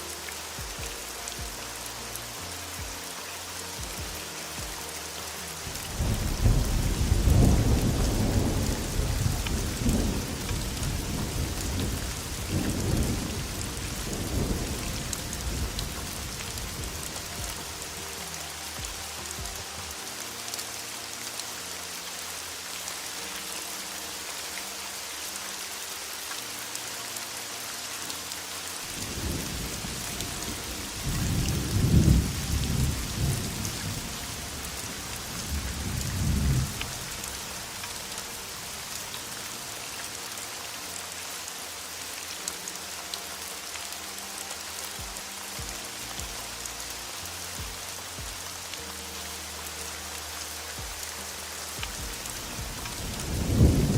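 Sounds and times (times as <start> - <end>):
heavy rain: 0.0 - 53.9
rolling thunder: 5.7 - 17.6, 29.0 - 37.7, 52.0 - 53.9.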